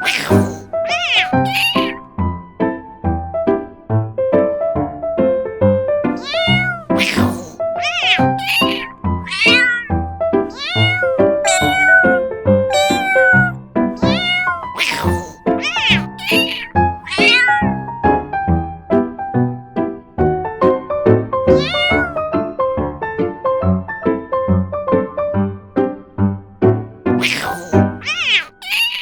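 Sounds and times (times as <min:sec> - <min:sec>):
cat meowing: 0:00.0 - 0:02.0, 0:06.2 - 0:17.8, 0:21.5 - 0:22.3, 0:27.2 - 0:29.0.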